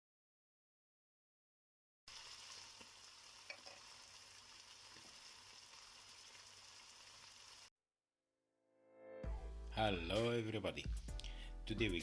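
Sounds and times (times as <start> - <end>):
food sizzling in oil: 2.1 - 7.7.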